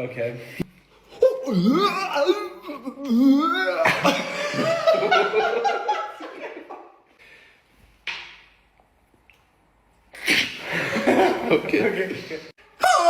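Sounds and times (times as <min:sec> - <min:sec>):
people laughing: 0:03.6 - 0:07.0, 0:10.6 - 0:12.4.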